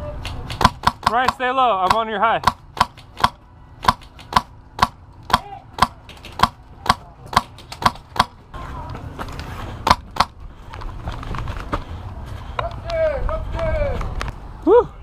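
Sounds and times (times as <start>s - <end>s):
airsoft rifle shots: 0.2s - 8.4s
rustle of movement: 7.1s - 14.6s.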